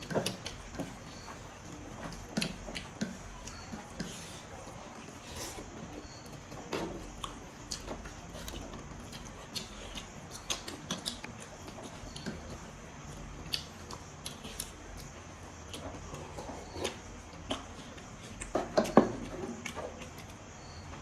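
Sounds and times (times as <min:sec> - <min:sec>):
meat being chewed: 0:00.0 - 0:20.6.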